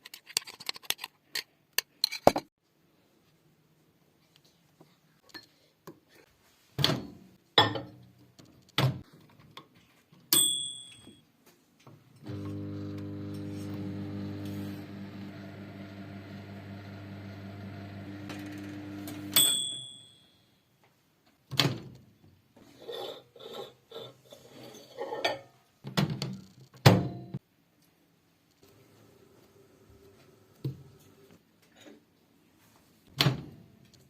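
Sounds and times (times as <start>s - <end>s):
microwave oven humming: 12.2s - 19.4s.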